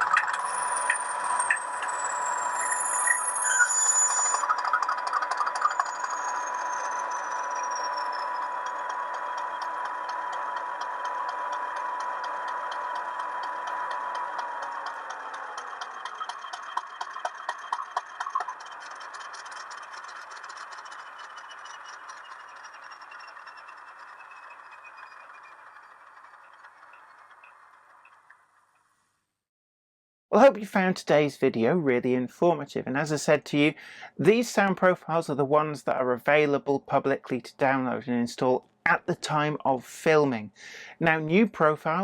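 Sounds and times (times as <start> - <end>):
diesel engine whine: 0.0 - 28.6
rattling clatter: 8.4 - 28.6.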